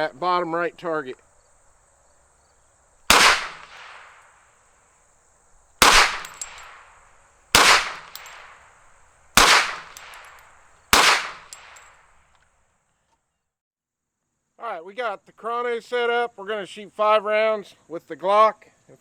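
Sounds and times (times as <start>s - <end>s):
gunshots with ringing tail: 3.1s - 4.4s, 5.8s - 12.0s
faint metallic clinks: 5.5s - 7.4s, 8.0s - 12.4s.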